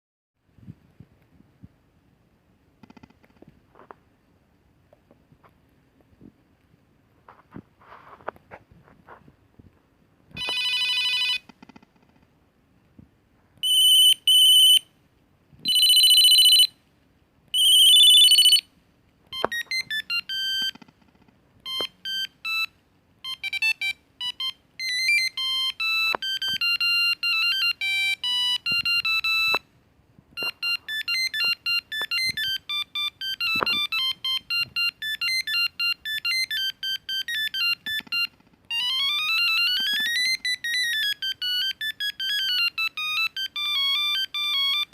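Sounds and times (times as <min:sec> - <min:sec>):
monophonic beeping ringtone melodies: 0:10.4 - 0:11.4, 0:13.6 - 0:14.8, 0:15.7 - 0:16.7, 0:17.6 - 0:18.6, 0:19.4 - 0:20.9, 0:21.6 - 0:29.6, 0:30.4 - 0:44.9
phone ringing bursts: 0:10.4 - 0:11.4, 0:13.6 - 0:14.8, 0:15.7 - 0:16.7, 0:17.6 - 0:18.7, 0:19.4 - 0:20.8, 0:21.7 - 0:29.6, 0:30.4 - 0:44.9.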